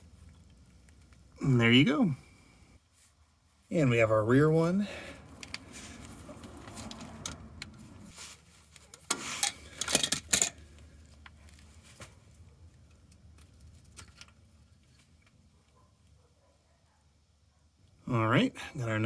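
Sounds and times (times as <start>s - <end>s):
hand tools clinking and rattling: 8.8s - 11.6s.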